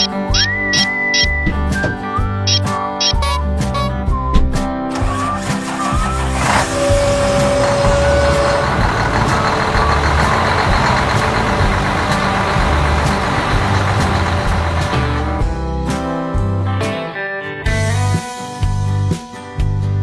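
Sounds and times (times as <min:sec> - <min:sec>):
farm machinery noise: 0:00.0 - 0:01.4, 0:04.9 - 0:15.5
held tone: 0:05.8 - 0:11.7.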